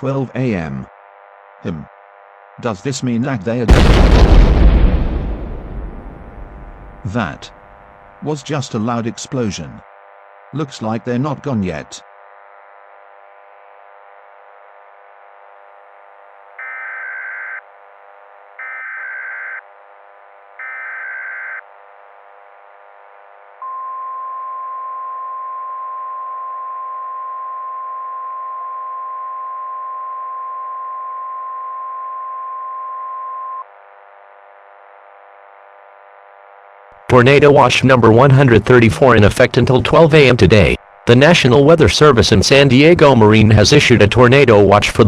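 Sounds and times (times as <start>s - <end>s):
faint steady hum: 21.6s - 45.0s.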